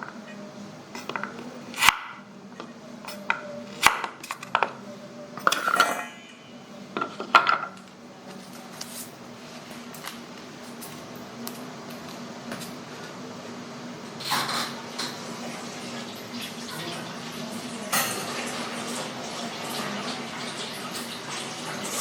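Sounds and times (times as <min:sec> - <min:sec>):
utensils clinking against dishes: 0:05.4 - 0:07.9, 0:14.2 - 0:15.3, 0:17.6 - 0:22.0.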